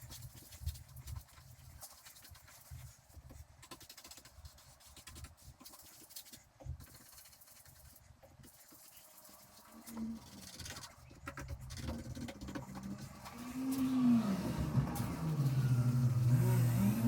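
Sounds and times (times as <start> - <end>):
faint scratching: 0.0 - 17.0.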